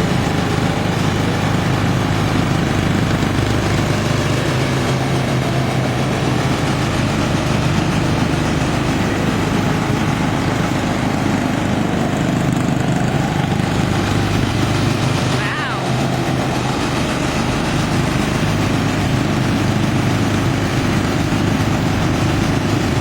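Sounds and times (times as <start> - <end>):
ride-on lawn mower engine running: 0.0 - 23.0.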